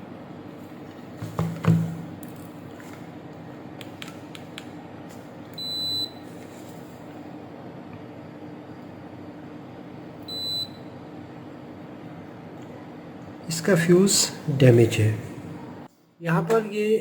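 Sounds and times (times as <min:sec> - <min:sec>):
knock: 0:01.2 - 0:02.0
multimeter high-pitched beep: 0:05.6 - 0:06.2, 0:10.3 - 0:10.9.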